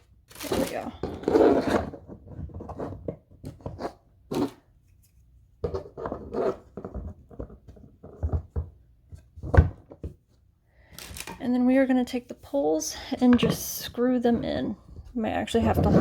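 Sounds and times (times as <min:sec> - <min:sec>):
shelf parts knocking and rattling: 0:06.7 - 0:10.2.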